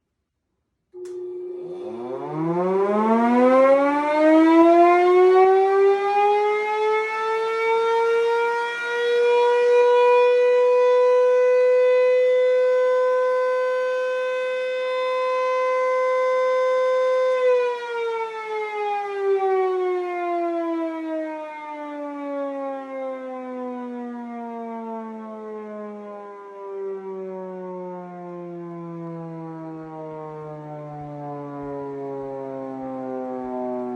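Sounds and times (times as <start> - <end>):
siren winding up and down: 1.0 - 22.1.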